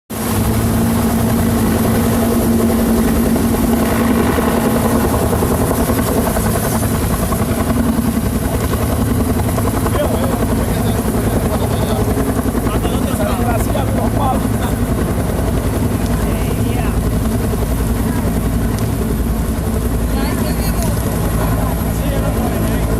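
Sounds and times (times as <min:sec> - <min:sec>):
helicopter rotor chopping: 0:00.1 - 0:22.9.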